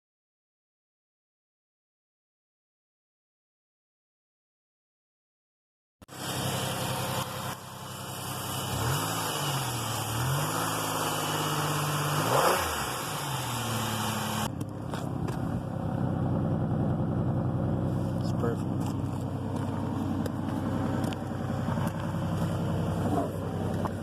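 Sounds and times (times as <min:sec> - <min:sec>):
car engine revving: 0:06.1 - 0:24.0.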